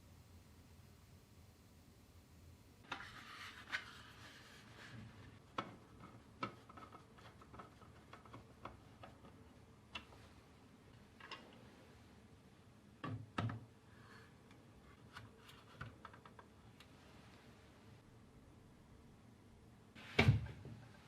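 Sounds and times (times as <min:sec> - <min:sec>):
light clicks and taps of handling: 0:05.5 - 0:10.3.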